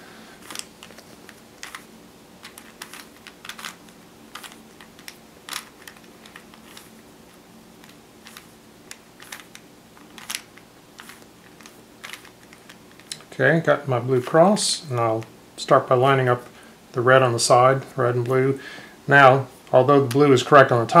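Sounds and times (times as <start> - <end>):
puzzle cube clicks and clacks: 0.4 - 13.3.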